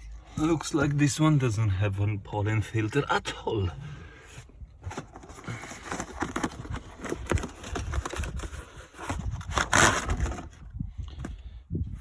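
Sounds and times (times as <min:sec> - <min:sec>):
plastic parts scraping and clicking: 0:04.8 - 0:11.3.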